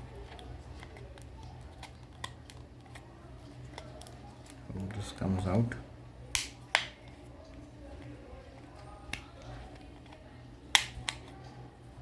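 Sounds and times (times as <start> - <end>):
scissors snipping plastic: 6.3 - 7.2, 8.0 - 11.5.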